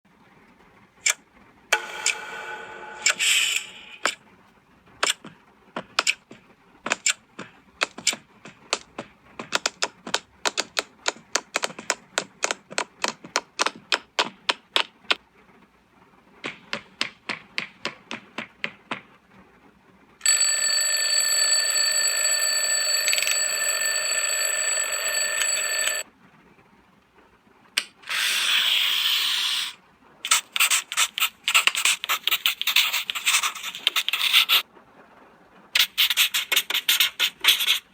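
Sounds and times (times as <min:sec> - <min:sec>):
electronic multi-tone ringing: 0:20.2 - 0:26.0.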